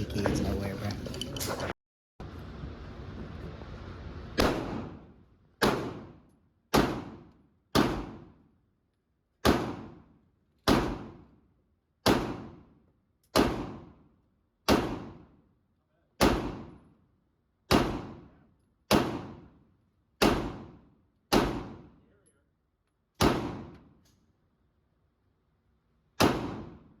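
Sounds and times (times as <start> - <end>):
pistol shots with ringing echo: 4.4 - 8.4, 9.4 - 10.1, 10.7 - 11.2, 12.0 - 12.7, 13.3 - 14.0, 14.7 - 15.3, 16.2 - 16.9, 17.7 - 19.5, 20.2 - 22.0, 23.2 - 23.9, 26.2 - 27.0.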